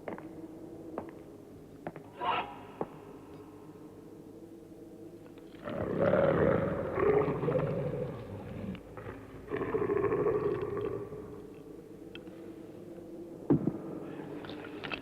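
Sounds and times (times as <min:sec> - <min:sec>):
rough low growling roar: 0:05.6 - 0:11.5.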